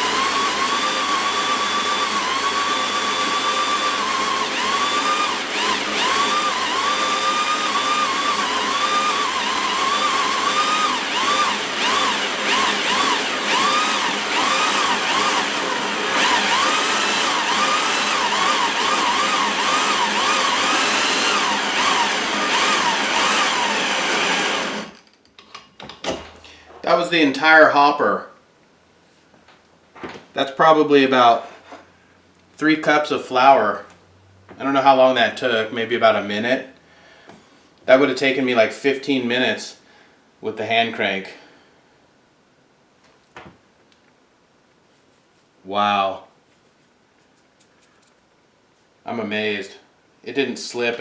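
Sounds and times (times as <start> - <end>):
drill motor whine: 0.0 - 25.0
grain mill grinding: 0.0 - 25.0.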